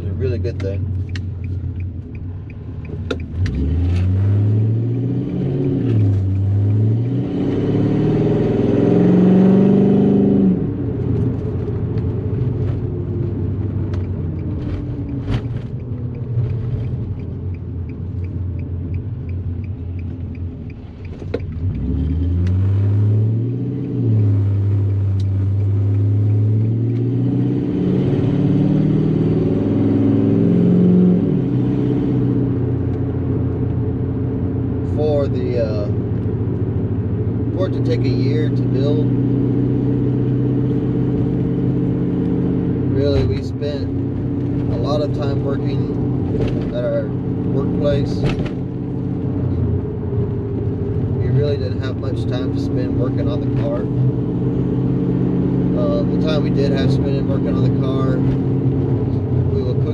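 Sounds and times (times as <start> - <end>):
car engine accelerating hard: 0.0 - 59.9.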